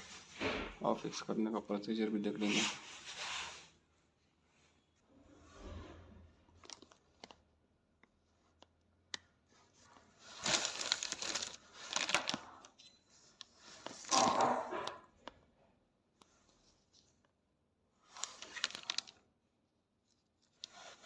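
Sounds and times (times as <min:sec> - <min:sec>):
rustling and crinkling: 0:06.5 - 0:07.4, 0:09.4 - 0:14.5, 0:18.0 - 0:19.3, 0:20.0 - 0:21.0.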